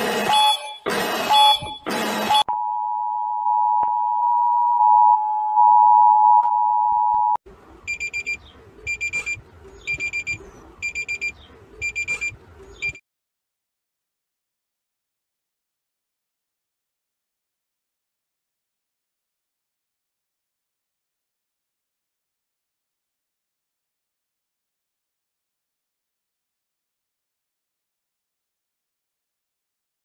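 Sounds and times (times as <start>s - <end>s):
screeching data bursts: 0.0s - 2.5s
two-tone attention signal: 0.3s - 13.0s
rapid high-pitched beeps: 7.9s - 13.0s.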